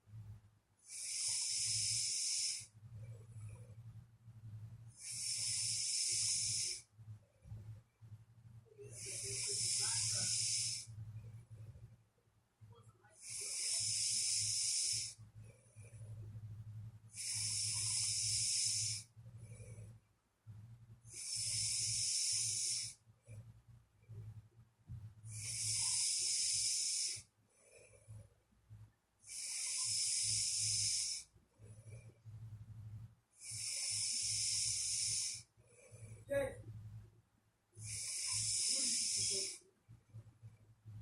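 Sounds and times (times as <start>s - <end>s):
low steady hum: 0.0s - 41.0s
person snoring and breathing: 0.9s - 3.6s, 4.9s - 6.9s, 8.8s - 11.0s, 13.2s - 16.0s, 17.1s - 20.0s, 21.1s - 23.0s, 25.3s - 28.2s, 29.2s - 32.1s, 33.4s - 36.4s, 37.8s - 39.6s.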